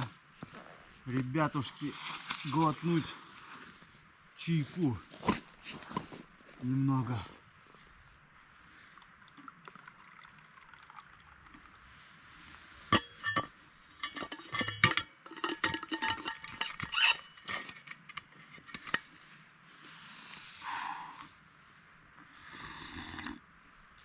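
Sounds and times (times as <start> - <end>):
metal clinks and knocks: 12.9 - 19.1.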